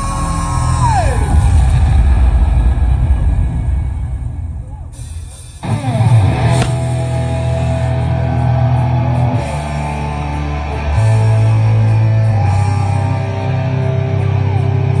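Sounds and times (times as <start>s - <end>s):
amplified electric guitar: 3.8s - 15.0s
held bass notes: 4.1s - 15.0s
rock band playing live: 5.0s - 15.0s.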